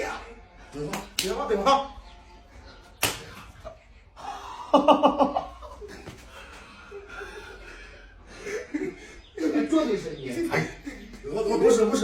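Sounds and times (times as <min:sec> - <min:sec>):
sharp slap: 0:00.9 - 0:01.4, 0:03.0 - 0:03.5.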